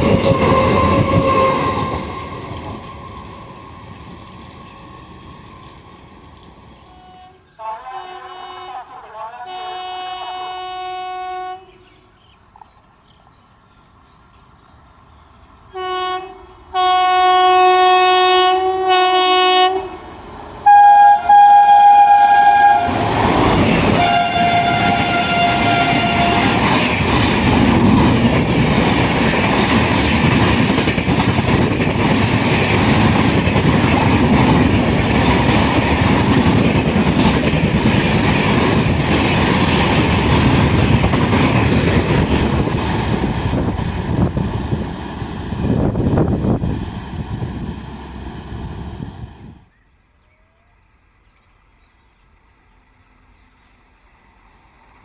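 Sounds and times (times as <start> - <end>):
train horn blasts: 0.0 - 3.0, 6.8 - 11.8, 15.7 - 23.3, 23.9 - 26.7
train wheels clattering over rail joints: 25.7 - 45.8.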